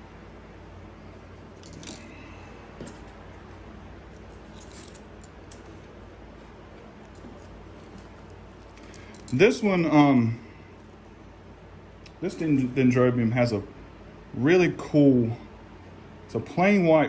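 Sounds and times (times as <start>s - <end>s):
steady low hum: 0.0s - 17.0s
wrapping clicking and crackling: 6.8s - 9.4s.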